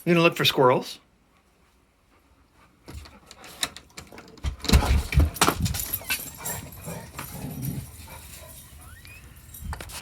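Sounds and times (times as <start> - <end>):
door opening clatter: 3.0 - 7.5
dog collar tags jingling: 5.2 - 10.0.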